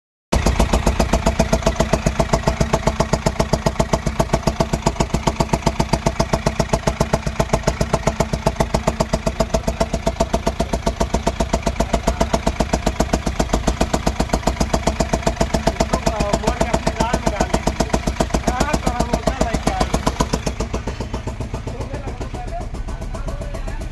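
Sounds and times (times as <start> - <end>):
car engine idling chugging: 0.3 - 23.9.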